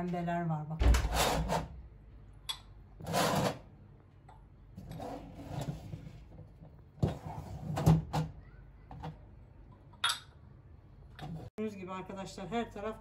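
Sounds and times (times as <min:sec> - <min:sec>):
porcelain cups clinking and knocking: 0:09.8 - 0:10.4.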